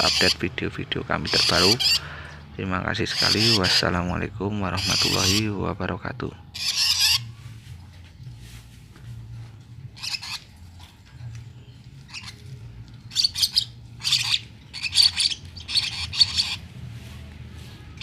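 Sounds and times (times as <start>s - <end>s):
lovebirds screeching: 0.0s - 5.8s, 6.4s - 7.4s, 9.9s - 17.0s.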